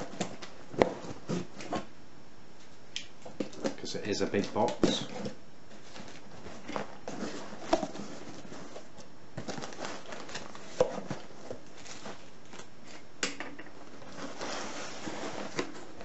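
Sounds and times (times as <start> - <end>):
cardboard box handled: 3.3 - 12.3
newspaper rustling: 3.3 - 13.0.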